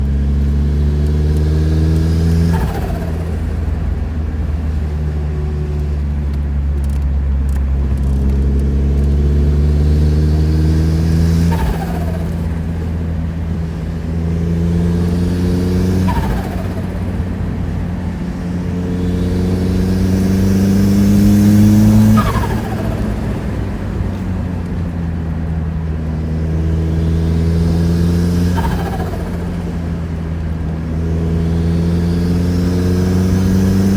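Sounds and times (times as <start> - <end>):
turbocharged car engine pulling: 0.0 - 33.9
turbo flutter and falling whistle: 15.9 - 17.3, 21.3 - 23.6, 26.9 - 29.9.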